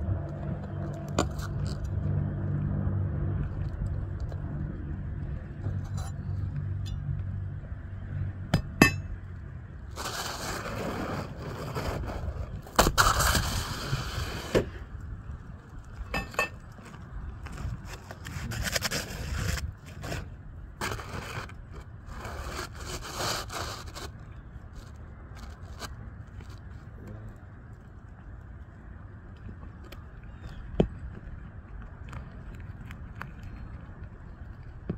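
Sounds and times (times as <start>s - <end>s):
tools scraping roof shingles: 9.9s - 14.8s, 16.0s - 26.6s.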